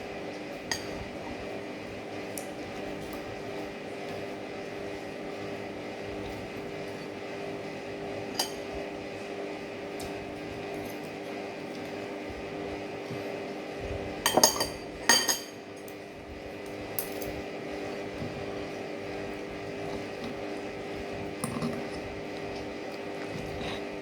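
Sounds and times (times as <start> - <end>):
utensils clinking on tableware: 14.3 - 15.6.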